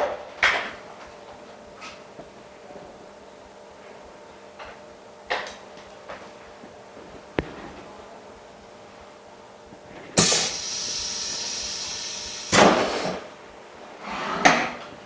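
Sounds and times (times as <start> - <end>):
air blasts: 9.9 - 13.4
pneumatic air hiss: 10.2 - 13.3.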